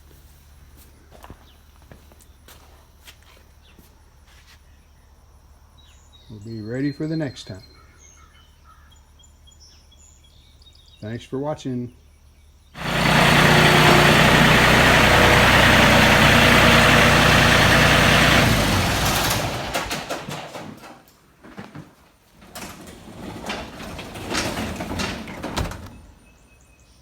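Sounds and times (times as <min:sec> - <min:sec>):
tractor engine running: 0:12.8 - 0:21.0
irregular knocks and rattles: 0:12.8 - 0:26.2.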